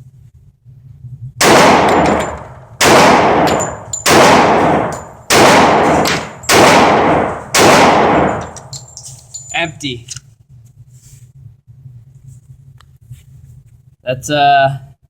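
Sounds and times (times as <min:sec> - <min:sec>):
pistol shots echoing: 0:01.4 - 0:08.7.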